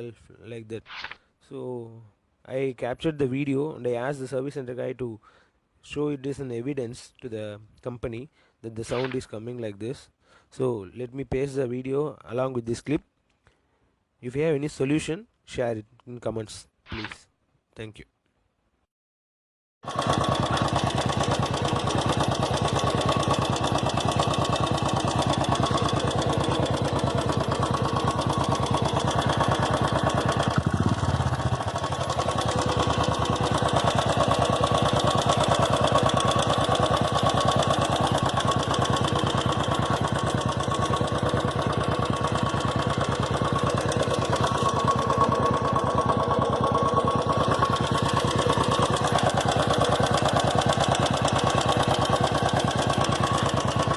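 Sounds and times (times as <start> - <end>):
motorcycle engine running: 19.8 - 53.9
engine ticking clicks: 20.0 - 53.9.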